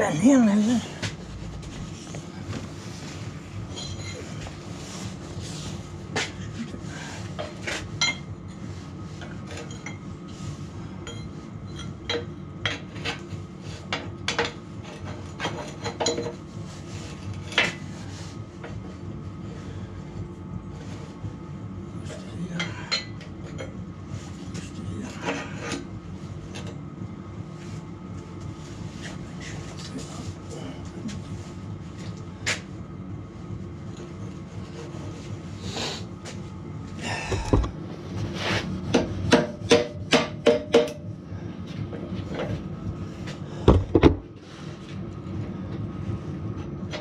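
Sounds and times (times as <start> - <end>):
steady low hum: 0.0 - 47.0
steel parts clinking and clanking: 3.7 - 4.4.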